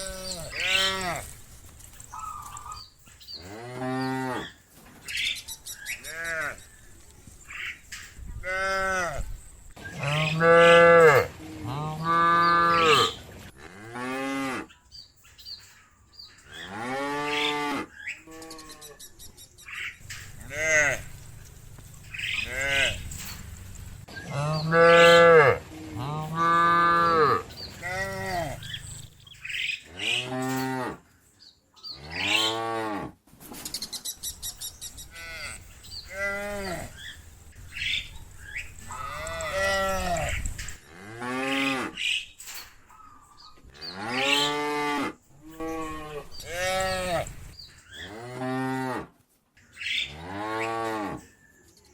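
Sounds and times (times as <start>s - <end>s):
cows mooing: 0.0s - 1.4s, 3.4s - 4.6s, 10.0s - 14.7s, 16.6s - 19.0s, 20.0s - 29.1s, 29.9s - 31.0s, 35.1s - 37.1s, 38.9s - 42.0s, 43.9s - 49.1s.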